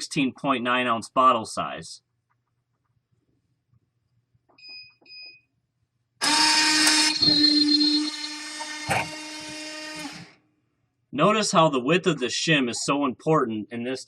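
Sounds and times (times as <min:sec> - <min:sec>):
vending machine motor whine: 0:06.2 - 0:10.4.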